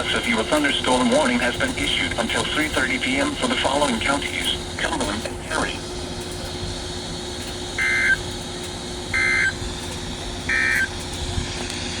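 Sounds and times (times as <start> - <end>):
radio hiss: 0.0 - 6.0
warbling data tone bursts: 7.8 - 8.2, 9.1 - 9.6, 10.5 - 10.9.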